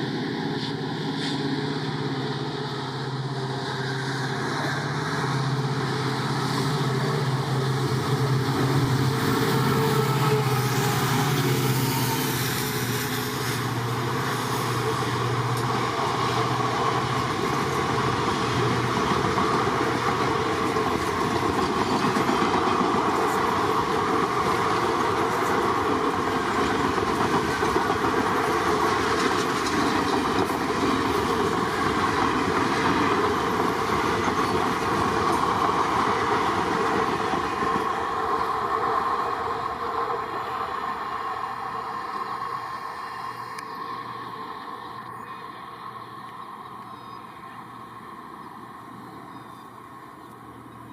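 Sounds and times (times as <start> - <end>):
locomotive hum: 0.0 - 50.9
train wheels clattering over rail joints: 17.1 - 37.8.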